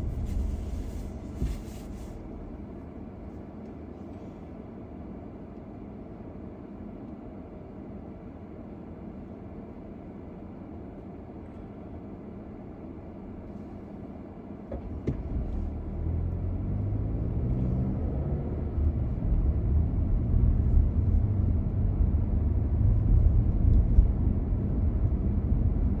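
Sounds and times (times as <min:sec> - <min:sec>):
car road and engine hum: 0:00.0 - 0:26.0
car engine accelerating: 0:14.8 - 0:26.0.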